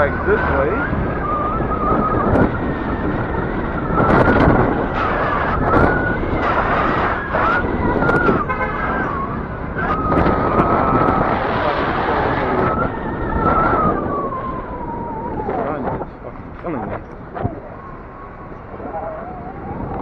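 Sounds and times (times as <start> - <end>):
road noise rushing: 0.0 - 20.0.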